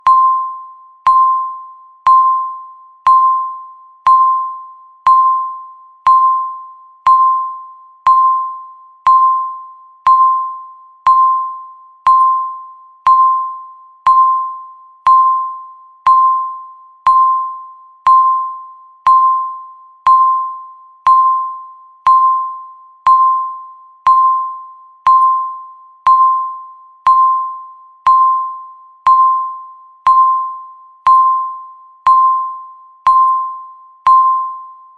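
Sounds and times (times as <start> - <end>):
countdown timer beeping: 0.0 - 34.8.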